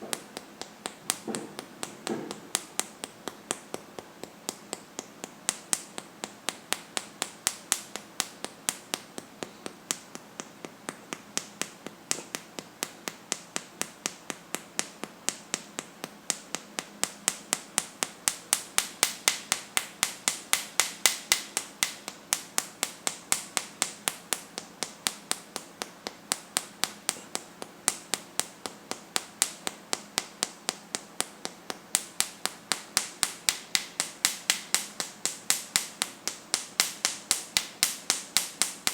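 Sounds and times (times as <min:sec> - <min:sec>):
hand patting chest: 0:00.0 - 0:38.9.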